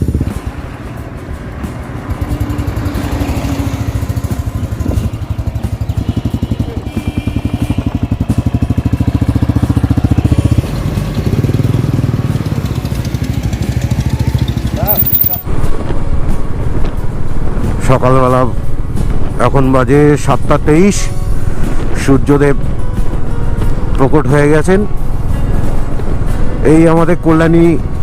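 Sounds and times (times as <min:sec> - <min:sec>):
motorcycle engine running: 0:00.0 - 0:15.5.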